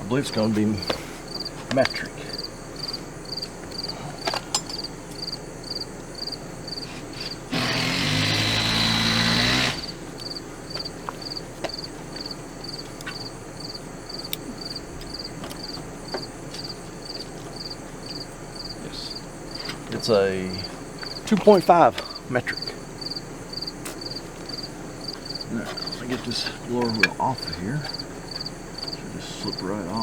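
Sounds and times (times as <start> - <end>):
crickets chirping: 0.0 - 30.0
motor humming: 6.8 - 11.0.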